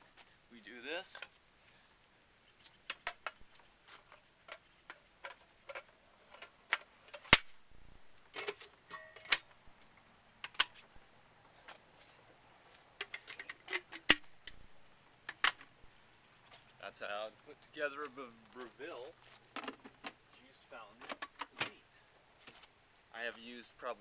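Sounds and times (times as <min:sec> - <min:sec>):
juicer parts clicking together: 0:13.0 - 0:14.6.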